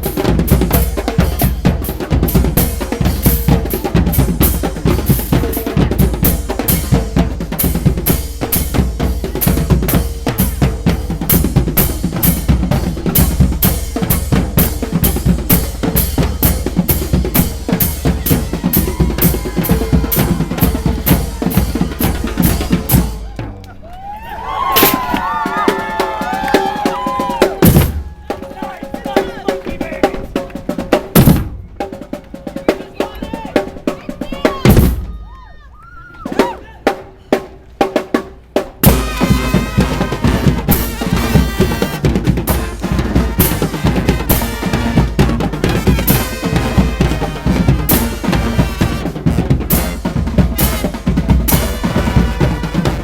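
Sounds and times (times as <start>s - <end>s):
brass band playing: 0.0s - 23.5s, 38.8s - 53.0s
snare and bass drum groove: 0.0s - 23.8s, 24.6s - 35.2s, 36.2s - 53.0s.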